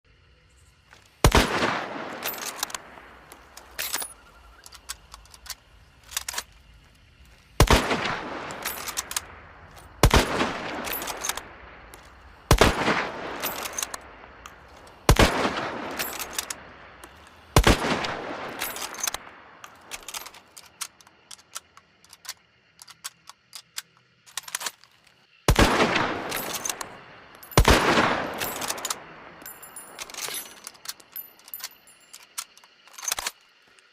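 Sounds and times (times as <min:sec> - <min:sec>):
rifle shots echoing: 0:01.2 - 0:04.1, 0:07.6 - 0:14.4, 0:15.0 - 0:20.0, 0:25.5 - 0:30.7
rifle bolt metallic clicks: 0:02.2 - 0:06.6, 0:08.5 - 0:10.2, 0:10.8 - 0:12.2, 0:13.4 - 0:15.2, 0:15.9 - 0:33.9.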